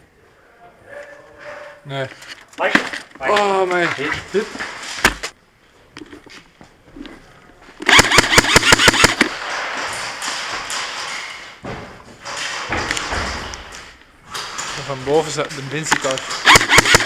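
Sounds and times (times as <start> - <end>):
airsoft gun shots: 7.9 - 9.4, 16.4 - 17.0.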